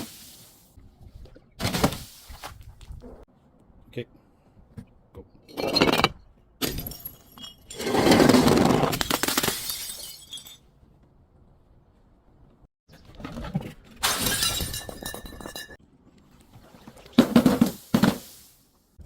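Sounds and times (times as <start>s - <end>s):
glass bottle breaking: 5.8s - 7.9s, 9.0s - 10.7s, 14.0s - 15.8s.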